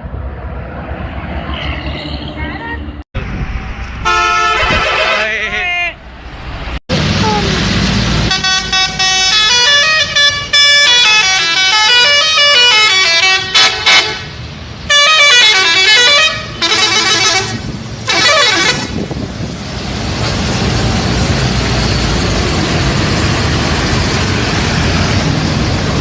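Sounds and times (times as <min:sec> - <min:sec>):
low traffic rumble: 0:00.0 - 0:26.0
bus musical horn tune: 0:04.0 - 0:05.2, 0:08.3 - 0:14.3, 0:14.9 - 0:19.0.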